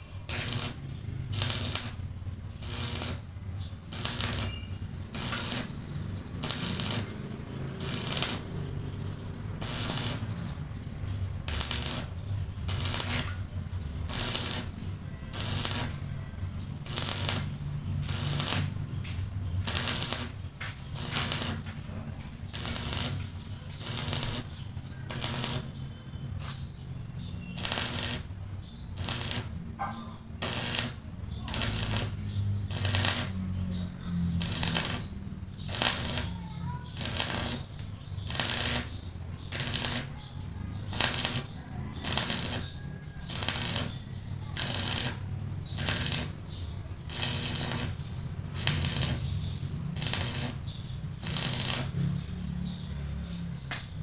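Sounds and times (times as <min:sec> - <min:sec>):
metal being abraded by hand: 0:00.3 - 0:02.0, 0:02.6 - 0:03.3, 0:03.9 - 0:05.8, 0:06.4 - 0:07.1, 0:07.8 - 0:08.6, 0:09.6 - 0:10.4, 0:11.5 - 0:12.1, 0:12.7 - 0:13.4, 0:14.1 - 0:16.1, 0:16.8 - 0:18.8, 0:19.6 - 0:21.8, 0:22.5 - 0:24.5, 0:25.1 - 0:25.8, 0:27.6 - 0:28.3, 0:29.0 - 0:33.4, 0:34.4 - 0:36.4, 0:37.0 - 0:40.2, 0:40.9 - 0:44.0, 0:44.6 - 0:45.2, 0:45.8 - 0:46.5, 0:47.1 - 0:49.3, 0:50.0 - 0:52.2.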